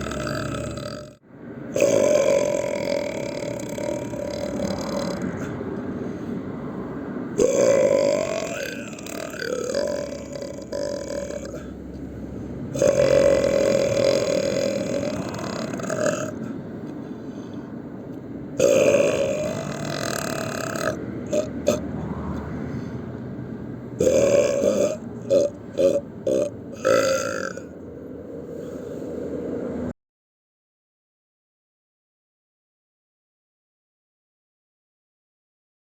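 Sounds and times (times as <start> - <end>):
person belching: 0.0 - 5.6, 7.4 - 11.8, 12.7 - 16.5, 18.6 - 21.9, 24.0 - 27.7.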